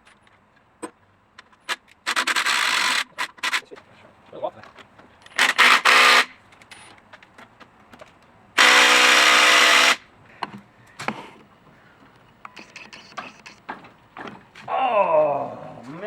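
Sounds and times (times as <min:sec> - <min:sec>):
power tool burst: 0:02.0 - 0:03.7, 0:05.4 - 0:06.4, 0:08.6 - 0:10.0
light metallic knocks and clicks: 0:12.1 - 0:14.6.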